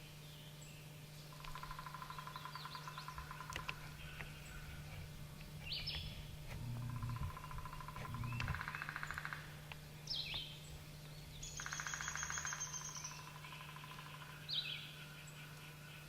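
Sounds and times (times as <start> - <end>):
steady low hum: 0.0 - 16.0
bird trilling: 1.4 - 10.6, 11.4 - 15.6
high bird chirps: 11.4 - 13.8.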